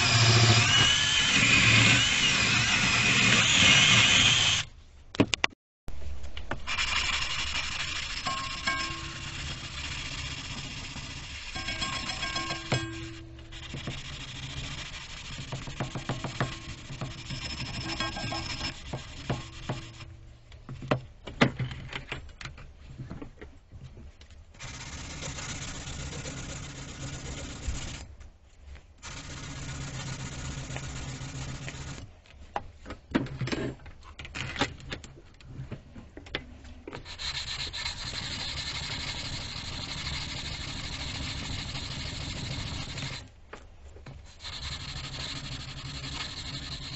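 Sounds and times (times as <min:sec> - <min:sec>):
abrasive rubbing on metal: 0:06.8 - 0:20.2.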